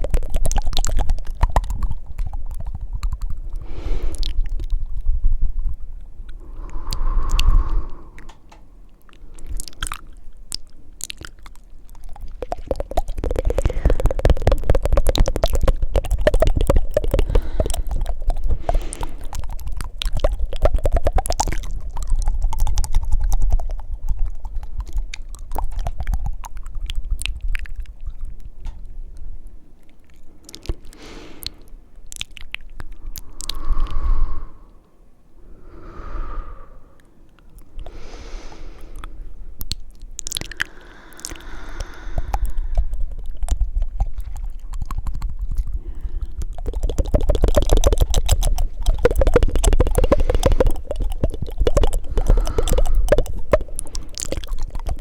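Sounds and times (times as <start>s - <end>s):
wet tongue flutters and clicks: 0.0s - 35.0s, 35.7s - 55.0s
short breaths: 3.6s - 4.4s, 6.4s - 10.1s, 17.1s - 19.5s, 30.3s - 31.9s, 33.0s - 39.6s, 40.5s - 43.0s, 45.8s - 46.4s, 50.0s - 50.9s, 51.9s - 54.3s.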